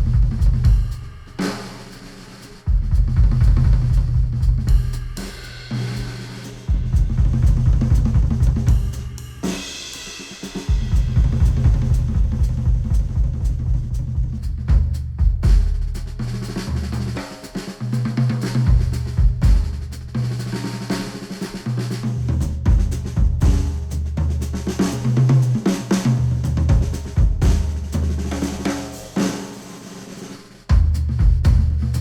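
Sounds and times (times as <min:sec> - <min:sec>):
deep bass line: 0:00.0 - 0:00.9, 0:02.7 - 0:04.9, 0:06.8 - 0:08.8, 0:10.9 - 0:16.0, 0:30.7 - 0:32.0
drum kit beat: 0:00.0 - 0:32.0.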